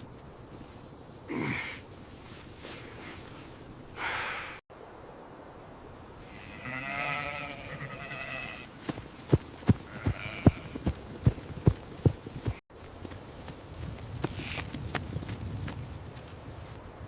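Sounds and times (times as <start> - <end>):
sheep bleating: 6.3 - 8.7, 9.8 - 10.9
sharp footsteps: 8.5 - 16.9.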